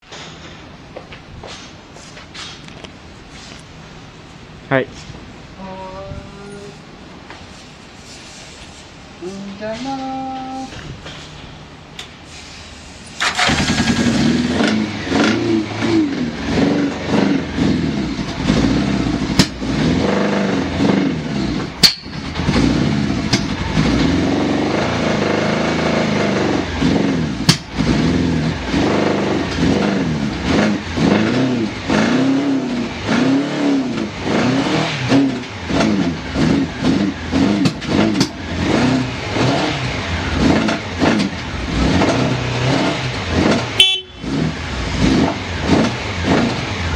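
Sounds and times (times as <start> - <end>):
electric starter cranking: 13.2 - 14.8
motorcycle engine revving: 13.2 - 46.9.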